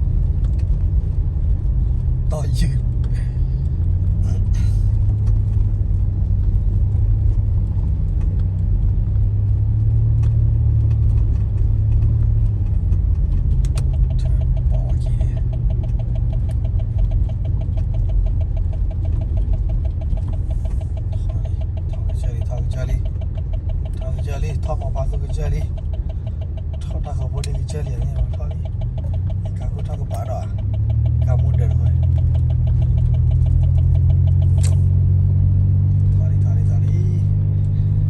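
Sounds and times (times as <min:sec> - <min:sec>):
engine low rumble: 0:00.0 - 0:38.0
fast even ticking: 0:11.8 - 0:38.0.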